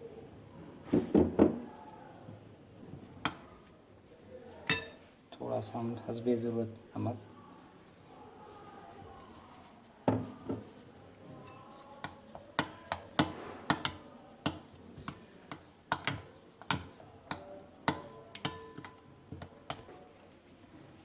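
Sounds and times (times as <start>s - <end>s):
spoon knocking against bowl: 4.7s - 5.0s, 11.4s - 19.9s.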